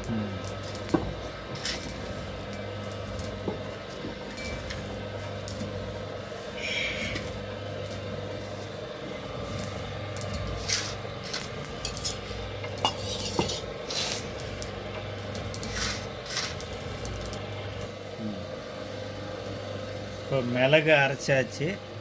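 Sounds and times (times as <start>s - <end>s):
stone scraping on stone: 15.6s - 16.6s.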